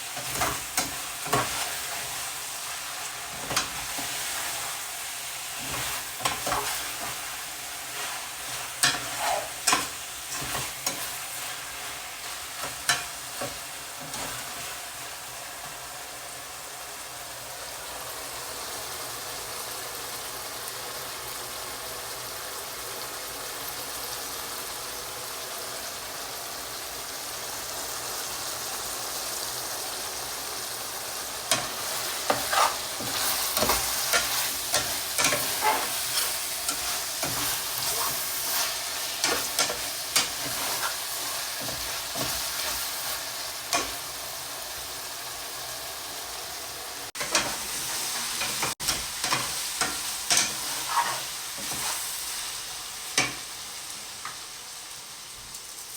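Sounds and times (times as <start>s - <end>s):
food sizzling in a pan: 0.0s - 55.9s
utensil scraping a pan: 0.2s - 4.8s, 5.6s - 14.6s, 31.5s - 44.1s, 47.2s - 52.2s.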